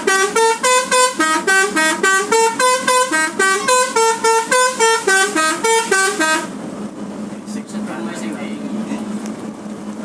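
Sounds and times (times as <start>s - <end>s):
bus musical horn notes: 0.0s - 6.6s.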